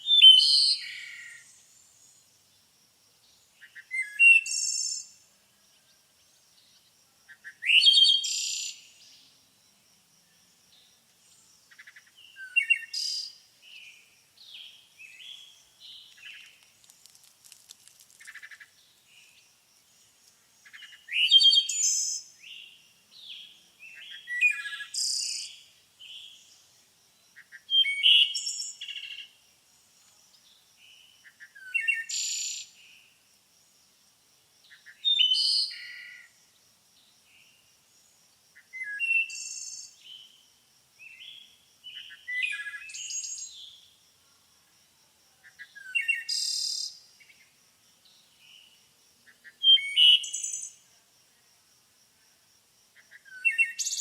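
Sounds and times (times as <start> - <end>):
songbird whistles and trills: 0.0 - 1.6, 3.6 - 5.2, 7.4 - 8.8, 20.7 - 22.4, 49.4 - 50.8.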